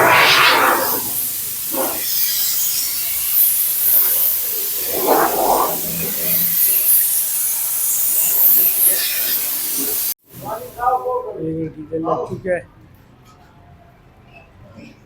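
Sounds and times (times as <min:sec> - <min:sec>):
spray gun hissing: 0:00.0 - 0:10.8.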